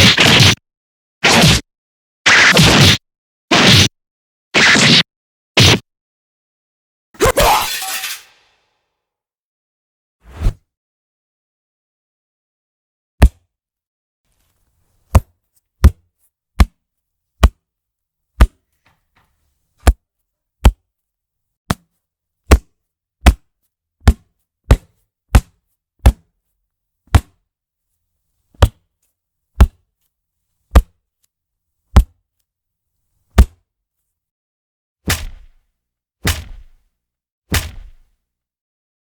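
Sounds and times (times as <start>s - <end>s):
punch sound effects: 0.0s - 0.6s, 1.2s - 1.6s, 2.3s - 3.9s, 4.6s - 5.0s, 5.6s - 5.8s.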